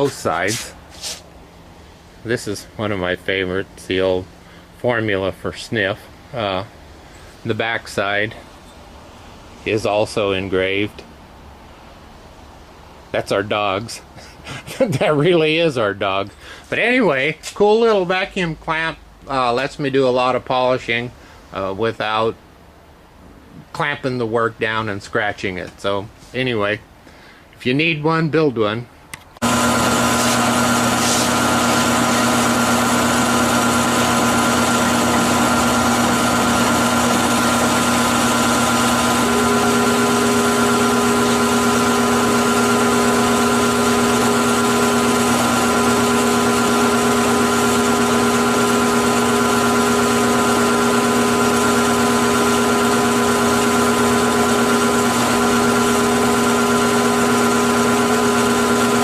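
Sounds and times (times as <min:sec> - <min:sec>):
electric motors humming: 0:29.4 - 0:59.0.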